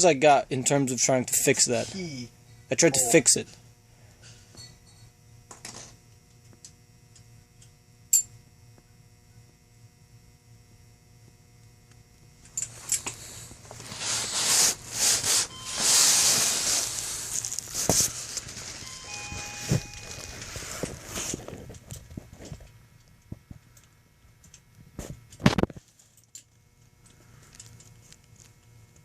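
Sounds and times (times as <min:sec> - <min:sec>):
rubbing and scraping: 0:12.7 - 0:21.7.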